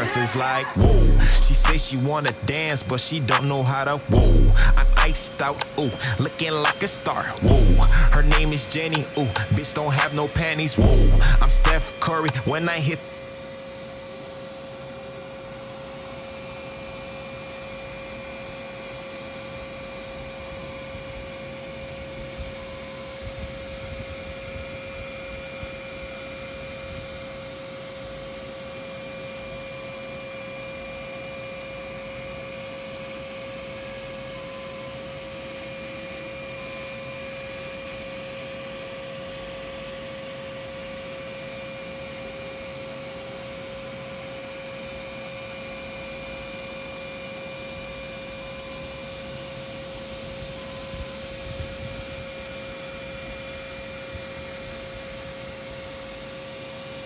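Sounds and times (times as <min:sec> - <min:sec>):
three-d printer humming: 0:00.0 - 0:13.0.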